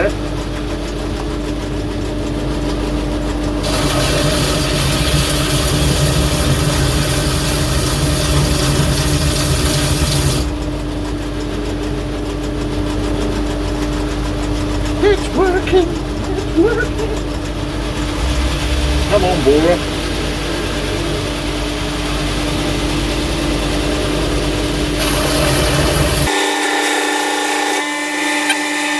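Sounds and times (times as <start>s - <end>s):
belt grinder motor running: 1.2s - 28.9s.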